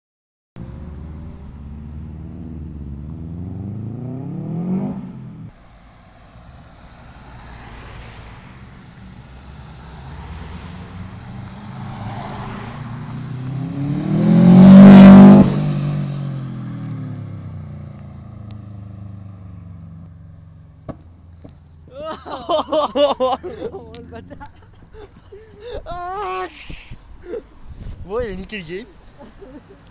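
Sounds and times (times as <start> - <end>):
cars accelerating hard past: 0.6 - 20.2.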